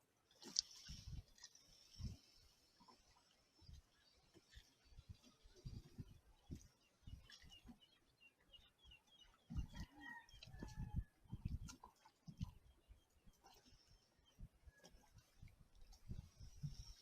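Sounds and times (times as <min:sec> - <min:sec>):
faint low thumps and knocks: 0:05.0 - 0:07.4, 0:09.4 - 0:12.6, 0:14.3 - 0:17.0.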